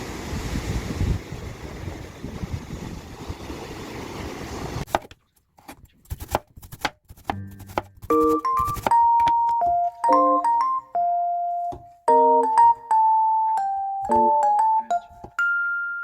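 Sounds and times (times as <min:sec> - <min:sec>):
knife chopping on cutting board: 0:04.9 - 0:08.9
light keyboard music: 0:07.3 - 0:16.0.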